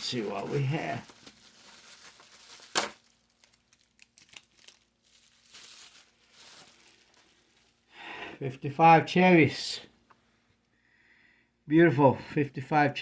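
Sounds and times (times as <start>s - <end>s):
packaging crackling: 0.0s - 7.9s
packaging crinkling: 0.0s - 7.9s
soft rustle: 0.0s - 7.9s.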